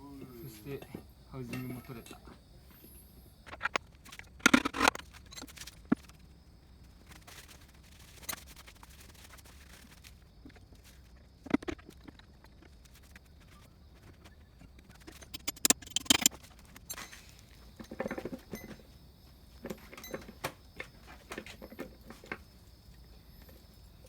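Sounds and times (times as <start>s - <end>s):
metal parts knocking and clinking: 15.1s - 16.3s.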